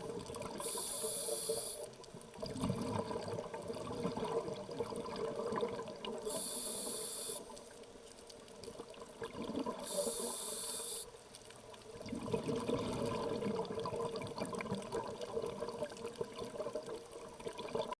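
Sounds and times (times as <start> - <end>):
diver inhaling through regulator: 0.6 - 1.9, 6.2 - 7.6, 9.8 - 11.1
exhaled bubbles rushing: 2.4 - 6.3, 9.2 - 10.0, 11.9 - 18.0.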